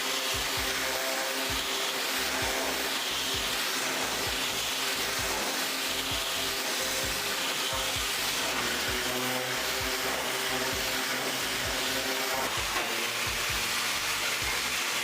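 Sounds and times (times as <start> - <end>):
background music with steady beat: 0.0 - 15.0
pressure washer jet spraying: 0.0 - 15.0.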